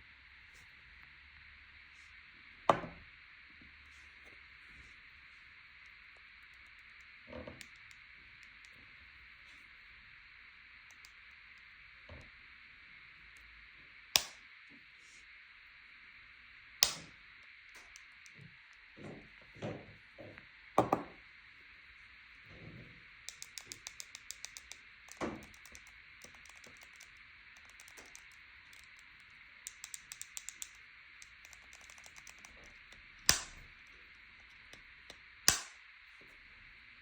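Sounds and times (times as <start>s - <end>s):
light ticking: 23.3s - 33.9s
charging case lid clicks: 35.5s - 35.7s.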